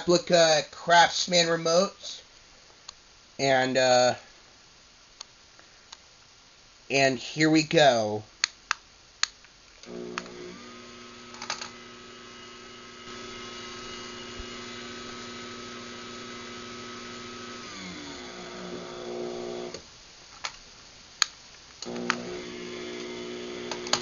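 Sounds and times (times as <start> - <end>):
garage door opener motor humming: 9.9 - 19.8, 21.8 - 24.0.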